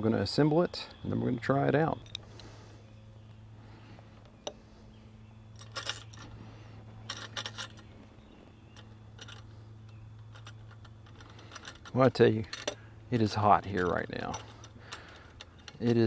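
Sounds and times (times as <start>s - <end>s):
steady low hum: 0.0s - 16.0s
metal hardware clicking and clinking: 2.0s - 2.5s, 5.5s - 6.4s, 7.0s - 16.0s.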